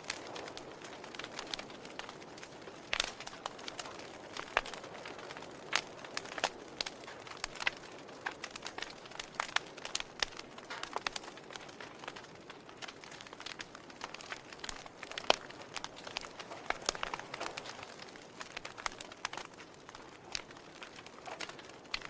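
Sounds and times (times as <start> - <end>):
fire crackling: 0.0 - 22.0.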